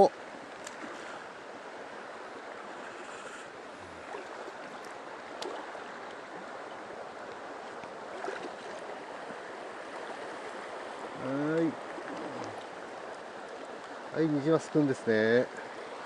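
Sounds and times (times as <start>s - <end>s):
stream water running: 0.0s - 16.0s
faint clicks: 11.5s - 13.9s.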